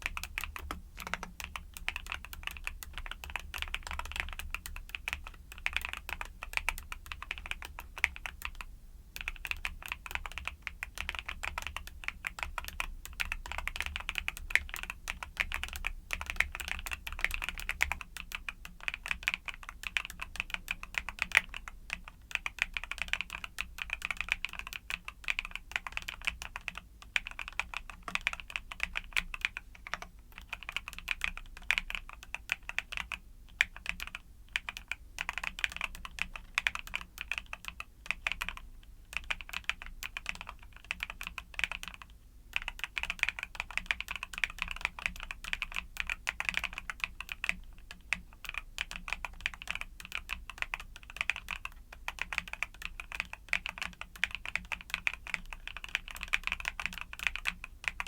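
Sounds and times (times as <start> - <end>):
fast typing on mechanical keyboard: 0.0 - 58.0.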